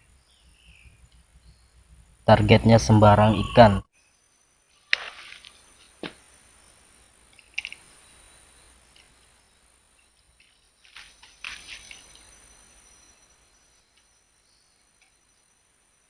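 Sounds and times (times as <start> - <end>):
high-pitched insect drone: 11.0 - 16.0.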